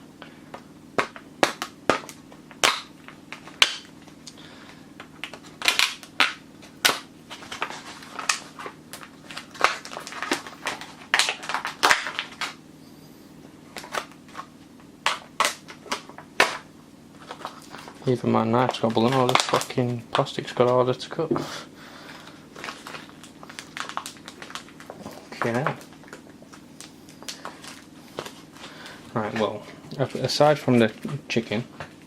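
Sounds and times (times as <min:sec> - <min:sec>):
plastic packaging crackling: 0:01.0 - 0:12.6, 0:17.2 - 0:21.0, 0:22.1 - 0:30.8.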